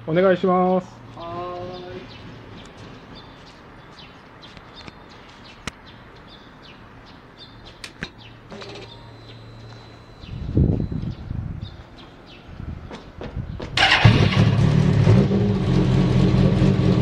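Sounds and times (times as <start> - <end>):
small birds chirping: 0.4 - 13.8.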